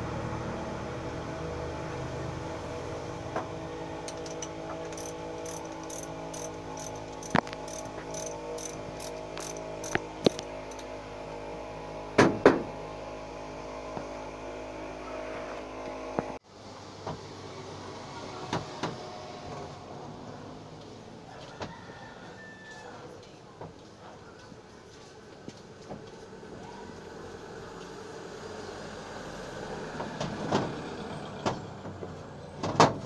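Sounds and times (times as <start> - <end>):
steady hum: 0.0 - 16.4
tools and engine parts clanking: 3.4 - 11.0.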